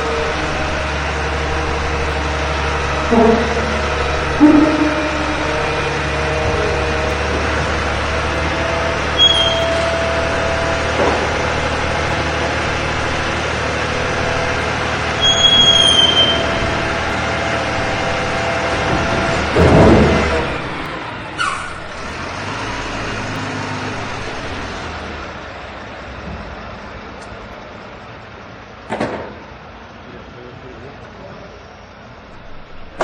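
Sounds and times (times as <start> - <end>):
high squeals: 0.0 - 25.1
truck engine idling: 0.0 - 33.0.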